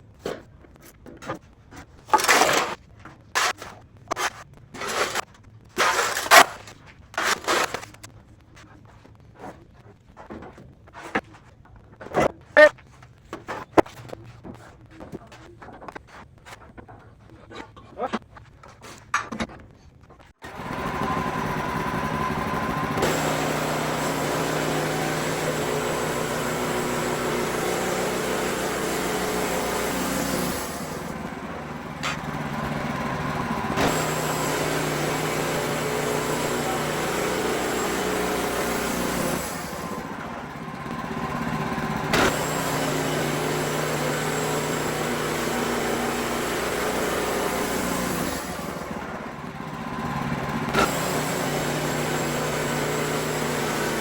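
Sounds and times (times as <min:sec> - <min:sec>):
band sawmill cutting log: 0:20.4 - 0:54.0.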